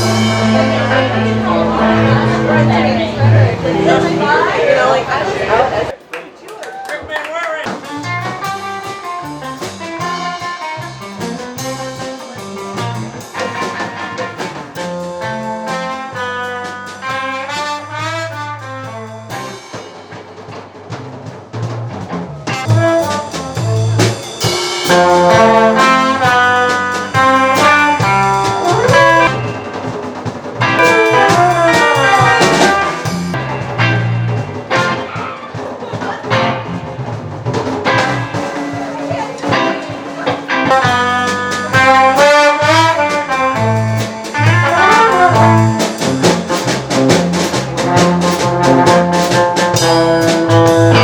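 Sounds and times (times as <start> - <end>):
drum hits: 0.0 - 4.6, 7.6 - 51.0
stepping bass line: 0.0 - 4.9, 21.7 - 29.6, 30.6 - 35.1, 36.1 - 51.0
lead melody line: 0.0 - 5.9, 22.4 - 30.0, 30.6 - 35.4, 36.0 - 51.0
live band playing: 0.0 - 6.1, 6.8 - 51.0.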